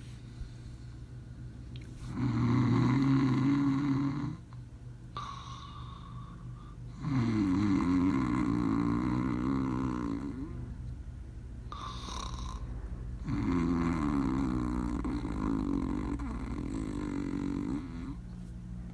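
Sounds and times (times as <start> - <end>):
snoring: 2.0 - 4.5, 5.2 - 10.8, 11.7 - 18.3.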